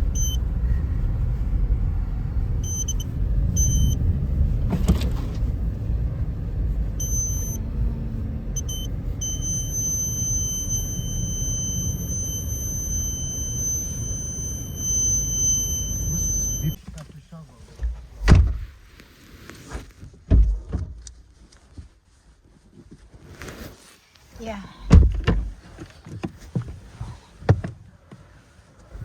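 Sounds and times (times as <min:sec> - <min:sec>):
car driving through snow: 0:00.0 - 0:17.4
high-pitched electronic beep: 0:00.1 - 0:00.4, 0:02.6 - 0:04.0, 0:07.0 - 0:07.6, 0:08.6 - 0:16.8.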